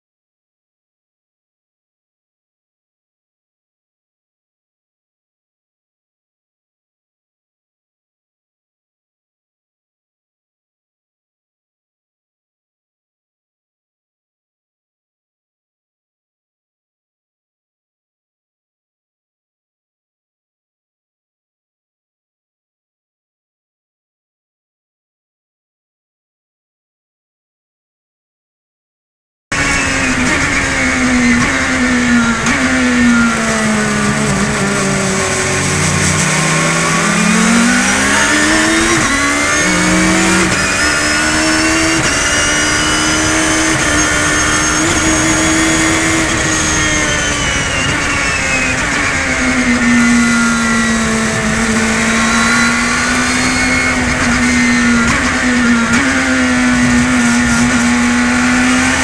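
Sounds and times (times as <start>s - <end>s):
race car engine running hard: 29.5s - 59.0s.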